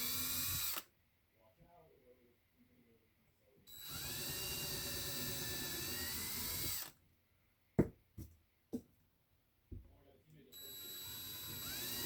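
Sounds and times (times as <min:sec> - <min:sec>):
small electric drill whining: 0:00.0 - 0:00.9, 0:03.7 - 0:07.0, 0:10.6 - 0:12.0.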